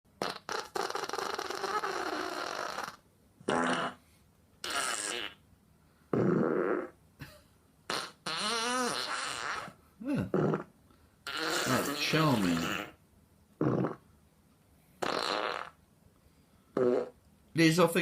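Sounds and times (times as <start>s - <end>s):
fart sounds from smart speaker: 0.2s - 4.0s, 4.6s - 5.4s, 6.1s - 7.0s, 7.9s - 13.0s, 13.6s - 14.1s, 15.0s - 15.8s, 16.8s - 17.2s.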